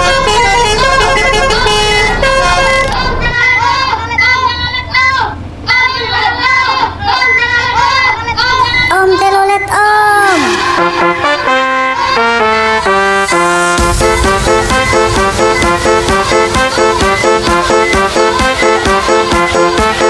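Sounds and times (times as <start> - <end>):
musical air horn tune: 0.0 - 3.4, 10.4 - 20.0
low engine rumble: 0.0 - 20.0.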